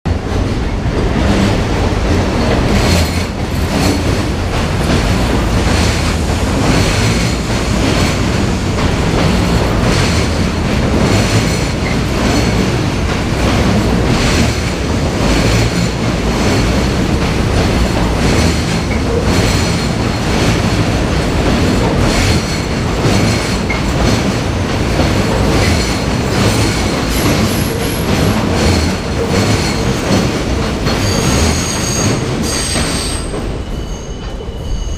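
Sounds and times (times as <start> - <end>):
steel wheels rumbling: 0.1 - 34.9
high-pitched flange squeal: 31.0 - 34.9.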